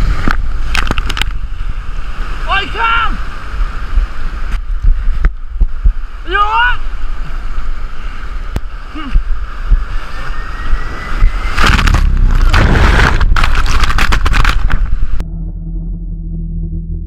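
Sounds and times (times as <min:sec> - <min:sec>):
surf washing over rocks: 0:00.0 - 0:15.2
wind rumbling on microphone: 0:00.0 - 0:15.3
low steady hum: 0:07.0 - 0:17.0.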